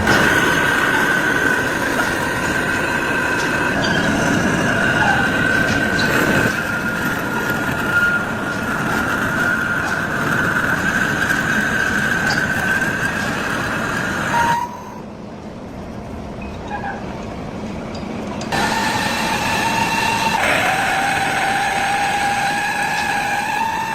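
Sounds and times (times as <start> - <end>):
heavy lathe machine noise: 0.0 - 15.0, 18.5 - 23.9
cutting tool squealing on metal: 3.4 - 11.3, 14.2 - 15.0, 18.6 - 23.9.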